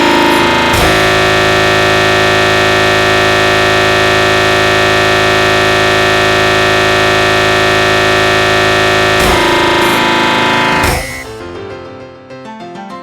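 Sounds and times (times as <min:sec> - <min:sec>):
dense cluster of synthesized notes: 0:00.0 - 0:11.5.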